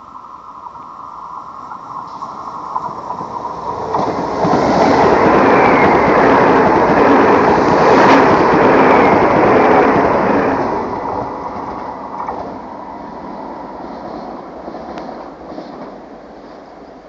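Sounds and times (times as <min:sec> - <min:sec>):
high-speed train passing: 0:00.0 - 0:17.0.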